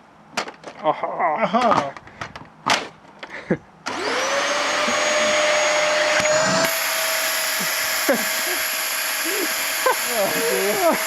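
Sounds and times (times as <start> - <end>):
vacuum cleaner motor whine: 3.9 - 11.0.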